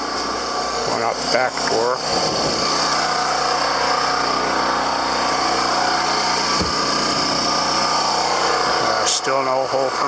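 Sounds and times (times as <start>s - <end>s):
generator engine running: 0.0s - 10.0s
brief thump: 6.6s - 6.8s.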